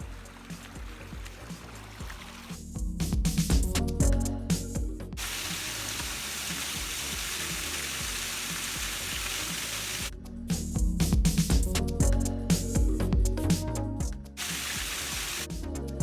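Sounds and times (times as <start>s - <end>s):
background music with a beat: 0.0s - 16.0s
waterfall rushing water: 5.2s - 10.1s, 14.4s - 15.5s.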